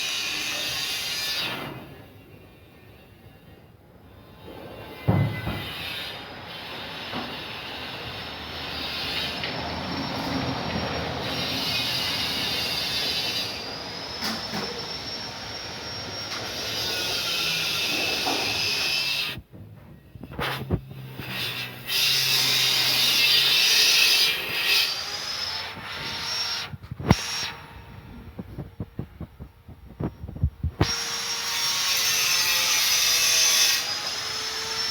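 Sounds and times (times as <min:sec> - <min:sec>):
gate motor whine: 0:13.2 - 0:16.8.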